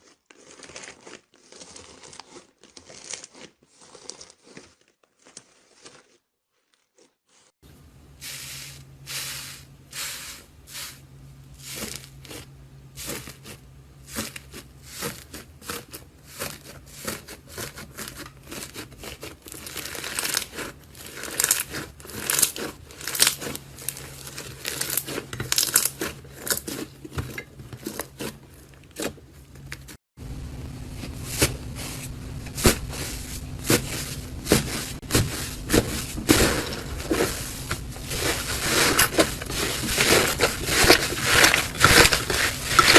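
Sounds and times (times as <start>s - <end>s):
slime crackling and popping: 0.0s - 6.2s, 18.5s - 26.8s, 30.5s - 42.9s.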